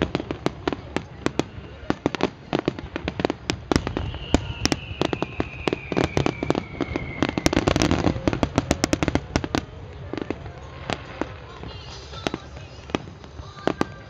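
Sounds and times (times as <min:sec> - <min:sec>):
fireworks bursting: 0:00.0 - 0:14.0
firework whistle falling in pitch: 0:03.8 - 0:08.3.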